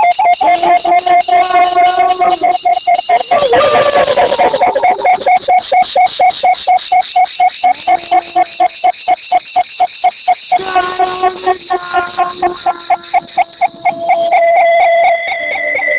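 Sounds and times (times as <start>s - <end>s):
fast pulsing electronic beep: 0.0s - 15.9s
low held electronic tones: 0.0s - 15.9s.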